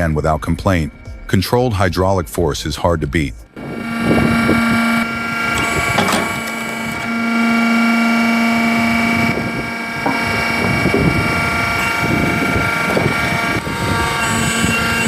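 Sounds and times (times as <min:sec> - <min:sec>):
log splitter machine hum: 0:03.5 - 0:15.0
wood knocks: 0:10.0 - 0:10.4.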